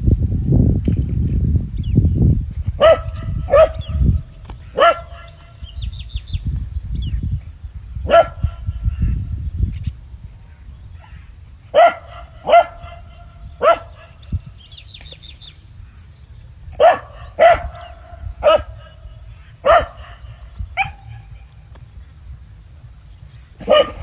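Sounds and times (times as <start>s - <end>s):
dog barking: 2.8s - 4.1s, 4.8s - 5.5s, 8.1s - 8.7s, 11.0s - 14.2s, 16.8s - 18.9s, 19.6s - 21.3s, 23.6s - 24.0s
faint high bird chirps: 13.6s - 19.6s.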